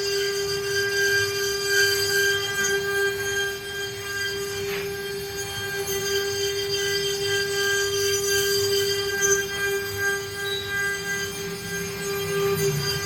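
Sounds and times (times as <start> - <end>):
router spindle whining: 0.0 - 13.0.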